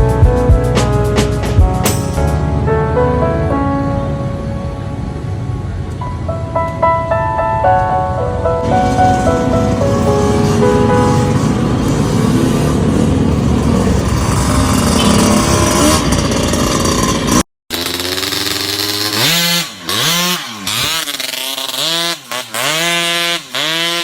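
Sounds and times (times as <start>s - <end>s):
loud rushing noise: 8.5s - 17.4s
scooter engine revving: 8.7s - 24.0s.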